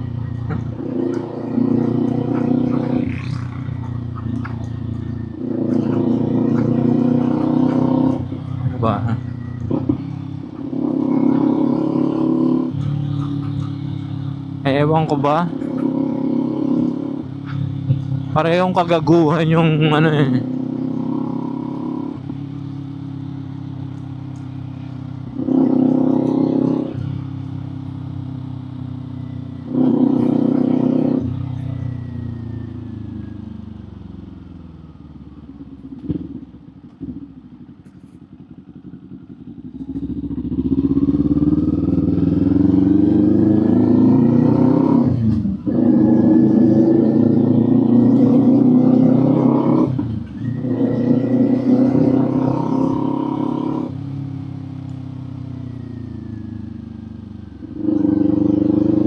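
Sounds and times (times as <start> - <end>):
motorcycle pulling away: 0.0 - 14.9, 19.0 - 59.0
motorcycle engine revving: 0.0 - 59.0.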